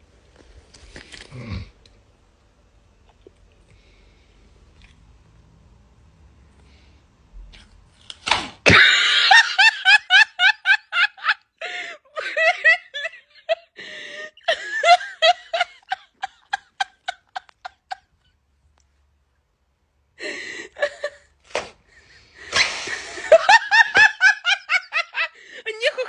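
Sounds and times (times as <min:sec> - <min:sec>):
person laughing: 0:08.7 - 0:18.1, 0:20.3 - 0:21.3, 0:22.4 - 0:26.0.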